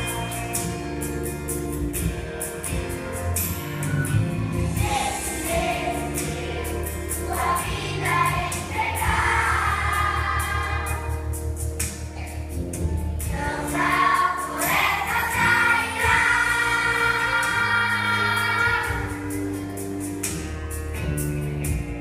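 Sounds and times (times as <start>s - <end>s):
instrumental accompaniment with beat: 0.0s - 22.0s
children's choir singing: 4.8s - 11.2s, 13.3s - 19.4s.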